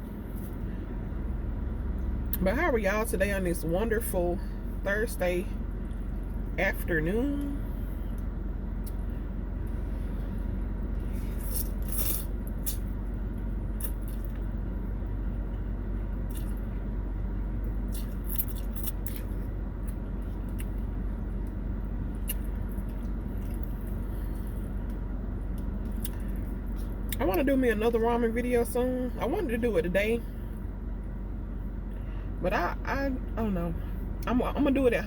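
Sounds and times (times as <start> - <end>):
low hum: 0.0 - 35.0
chewing: 16.3 - 16.6.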